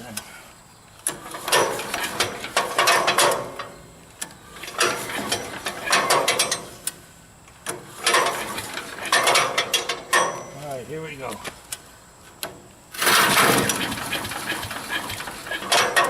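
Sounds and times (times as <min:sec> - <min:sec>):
recoil starter whirring rattle: 0:01.0 - 0:07.0, 0:07.6 - 0:10.2, 0:12.9 - 0:16.0.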